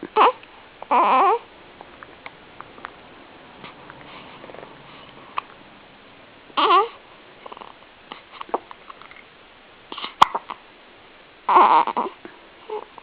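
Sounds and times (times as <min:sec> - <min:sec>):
squeaky vocal sounds: 0:00.0 - 0:01.5, 0:06.6 - 0:07.8, 0:11.5 - 0:13.0
hiccups: 0:09.9 - 0:10.6.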